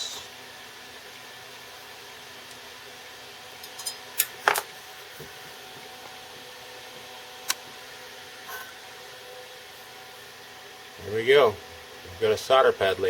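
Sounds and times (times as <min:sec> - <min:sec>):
small fan humming: 0:00.0 - 0:13.0.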